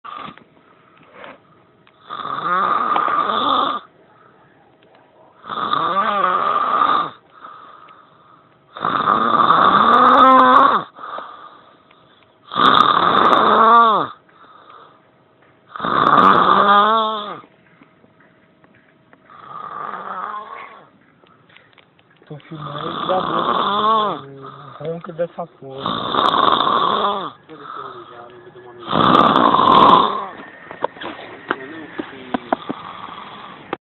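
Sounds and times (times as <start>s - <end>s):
person snoring loudly: 2.0s - 3.9s, 5.4s - 7.8s, 8.7s - 11.6s, 12.5s - 14.2s, 15.7s - 17.5s, 19.3s - 20.9s, 22.6s - 24.8s, 25.7s - 30.6s, 32.5s - 33.8s.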